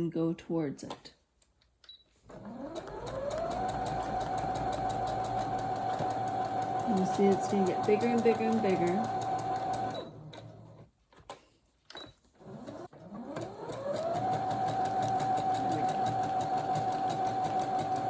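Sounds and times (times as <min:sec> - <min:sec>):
sewing machine motor whine: 0:02.3 - 0:10.8, 0:12.4 - 0:18.0
sewing machine clicks: 0:02.4 - 0:10.5, 0:12.6 - 0:18.0
needle ticking rapidly: 0:03.3 - 0:09.9.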